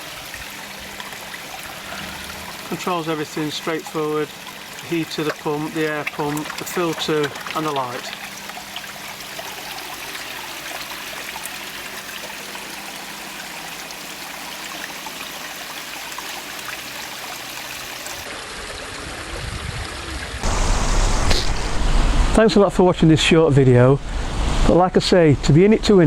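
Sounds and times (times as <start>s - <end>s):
water trickling: 0.0s - 22.4s
low rumble: 20.4s - 25.0s.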